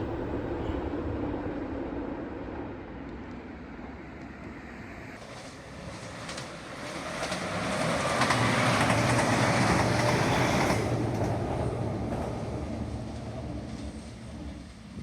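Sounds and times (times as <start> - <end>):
train engine passing by: 0.0 - 15.0
wheels on rails: 5.2 - 14.8.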